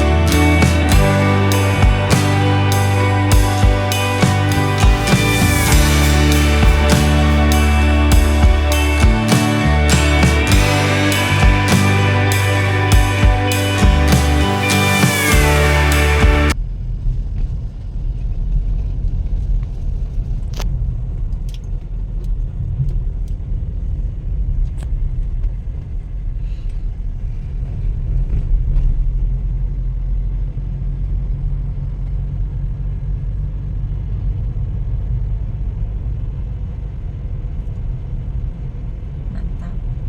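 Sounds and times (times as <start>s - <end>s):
road traffic rumble: 0.0s - 16.6s.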